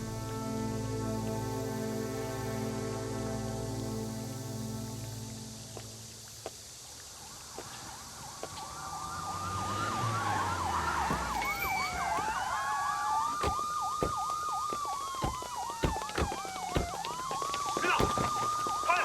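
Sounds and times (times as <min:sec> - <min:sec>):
police siren wailing: 0:08.4 - 0:19.0
police siren yelp: 0:08.5 - 0:19.0
sharp knocks: 0:11.1 - 0:11.5, 0:13.3 - 0:17.2, 0:17.8 - 0:18.7.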